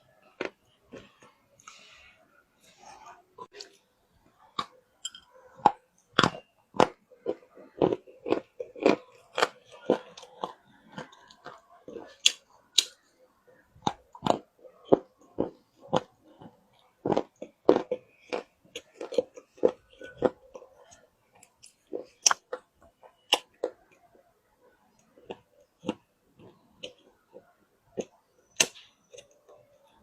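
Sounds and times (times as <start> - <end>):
person chewing crunchy clay: 0.0 - 1.9, 2.7 - 13.1, 13.8 - 30.0.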